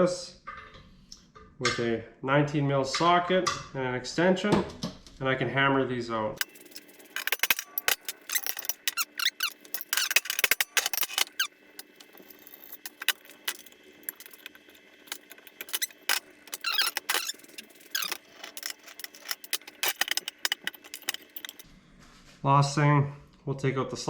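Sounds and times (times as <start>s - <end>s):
metal tools clinking and knocking: 6.4s - 21.6s.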